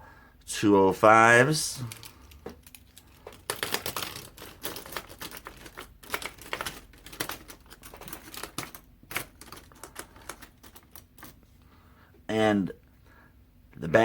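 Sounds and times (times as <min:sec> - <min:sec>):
plastic pencils clicking and clattering: 0:01.7 - 0:11.4.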